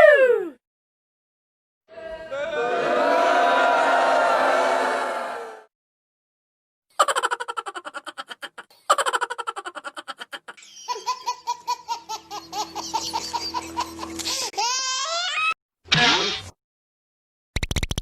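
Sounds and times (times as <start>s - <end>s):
staccato laughing: 7.0s - 14.5s.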